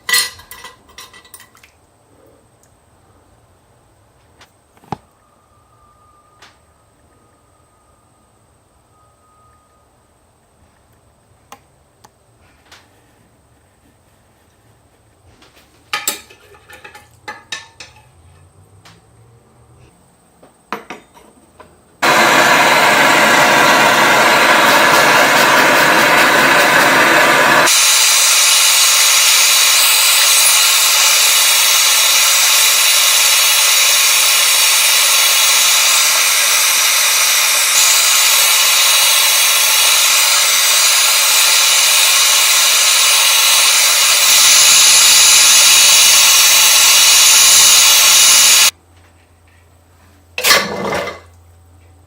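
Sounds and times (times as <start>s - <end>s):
small electric power tool running: 22.0s - 48.7s.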